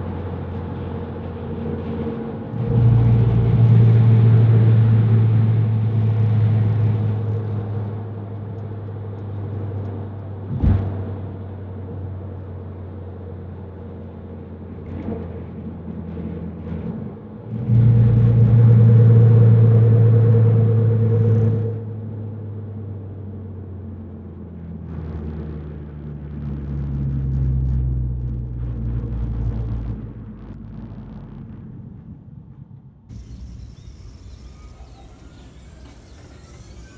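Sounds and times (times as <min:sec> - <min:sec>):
car engine droning in cabin: 0:33.1 - 0:36.9.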